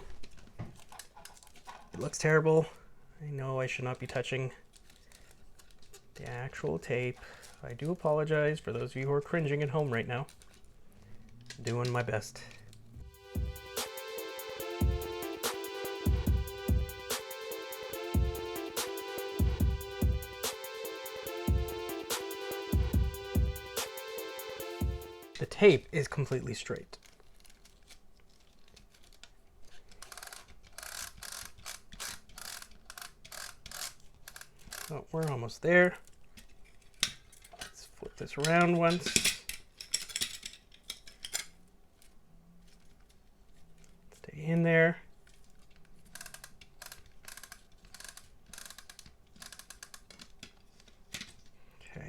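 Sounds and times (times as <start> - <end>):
plastic ratcheting clicks: 27.0 - 35.3, 45.2 - 51.6.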